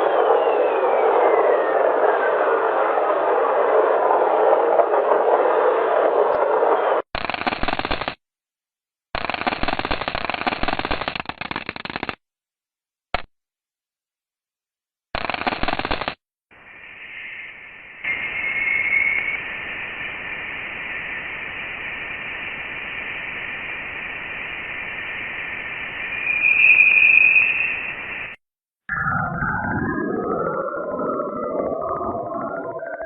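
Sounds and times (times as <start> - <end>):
faint falling whistle: 0.0 - 4.0, 16.6 - 21.4, 24.8 - 33.0
crackling radio static: 15.2 - 26.5
steady high tone: 16.6 - 33.0.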